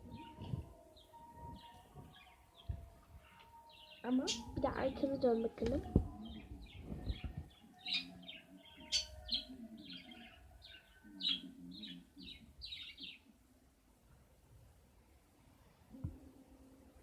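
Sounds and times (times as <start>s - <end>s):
bird chirping: 0.0s - 13.4s.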